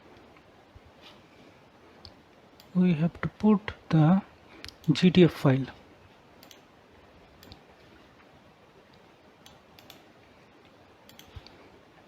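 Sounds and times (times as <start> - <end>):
room hiss: 0.0 - 12.0.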